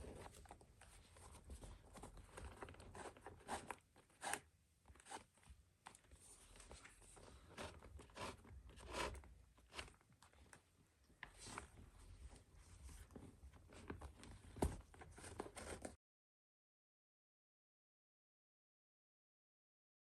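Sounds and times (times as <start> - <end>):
leather lace scraping: 7.5 - 10.0.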